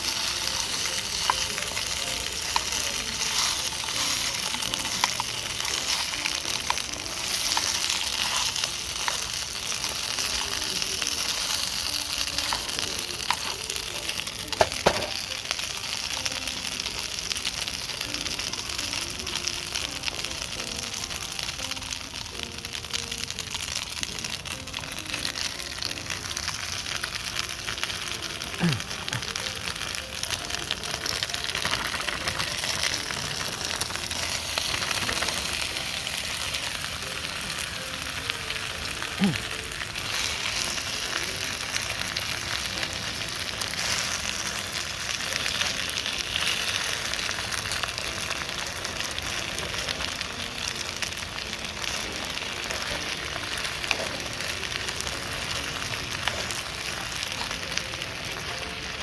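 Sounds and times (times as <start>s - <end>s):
dumplings sizzling in a pan: 0.0s - 59.0s.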